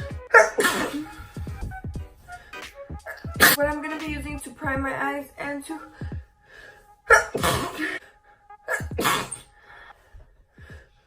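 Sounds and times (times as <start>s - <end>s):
woman sneezing: 0.3s - 1.1s, 7.1s - 8.0s, 8.7s - 9.5s.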